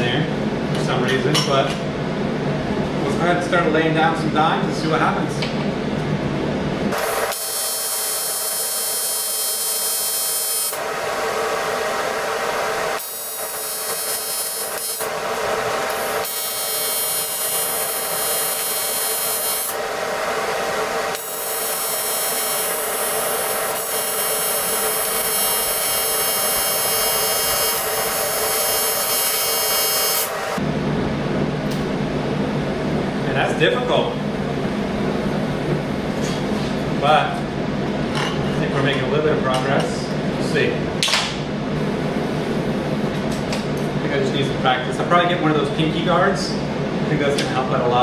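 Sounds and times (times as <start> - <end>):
welding arc buzzing and crackling: 6.9 - 30.6.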